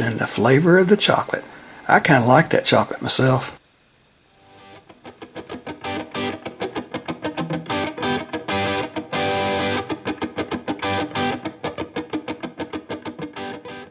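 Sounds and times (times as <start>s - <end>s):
distorted electric guitar: 0.0s - 13.9s.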